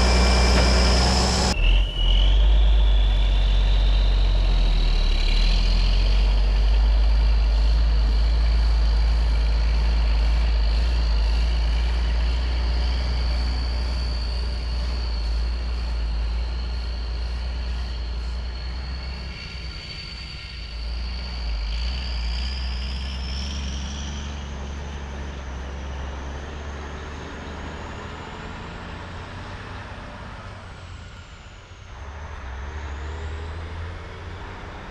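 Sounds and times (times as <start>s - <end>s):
high whine: 0.0s - 22.3s
diesel engine running: 0.0s - 34.9s.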